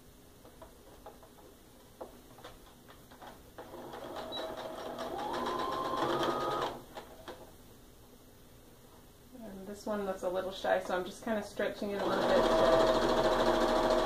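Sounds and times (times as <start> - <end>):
sewing machine stitching: 3.6 - 7.4, 12.0 - 14.0.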